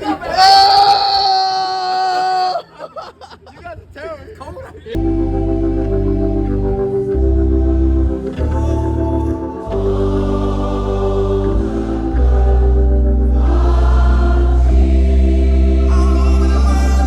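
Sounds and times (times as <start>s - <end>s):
choir singing: 5.0s - 17.0s
deep bass: 5.0s - 17.0s
organ chords: 5.0s - 17.0s.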